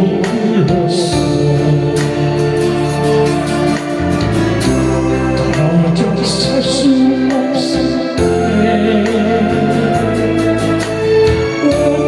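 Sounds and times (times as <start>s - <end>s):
instrumental accompaniment: 0.0s - 12.0s
person singing: 0.0s - 12.0s.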